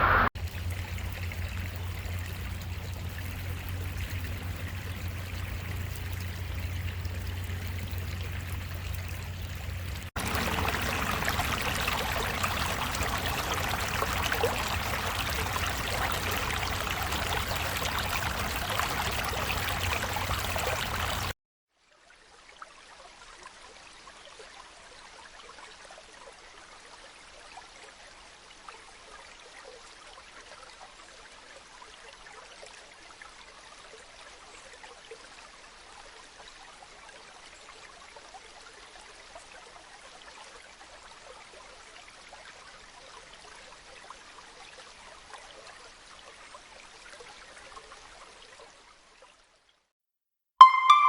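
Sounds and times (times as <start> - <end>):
rainwater running and trickling: 0.3 - 21.4
loud musical note: 50.6 - 51.0.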